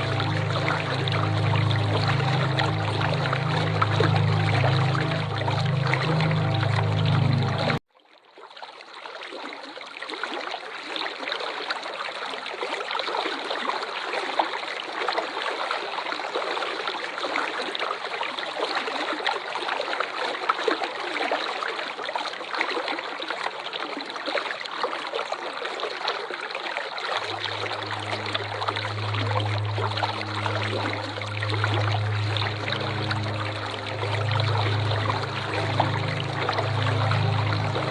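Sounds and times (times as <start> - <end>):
low steady hum: 0.0 - 7.8, 27.2 - 37.9
waterfall rushing: 0.0 - 7.8, 27.2 - 37.9.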